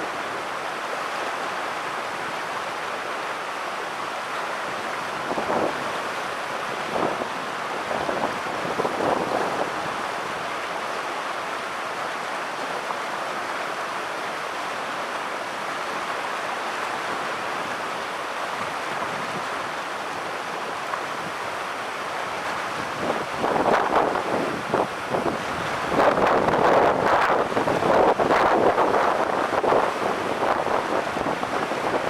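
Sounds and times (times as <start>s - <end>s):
river water rushing: 0.0s - 32.0s
wind buffeting microphone: 6.8s - 10.0s.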